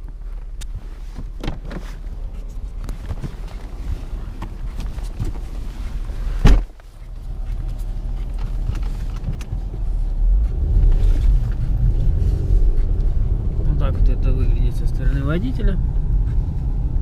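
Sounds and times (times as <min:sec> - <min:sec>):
car engine and tyre rumble: 0:00.0 - 0:17.0
sharp thump: 0:06.4 - 0:06.7.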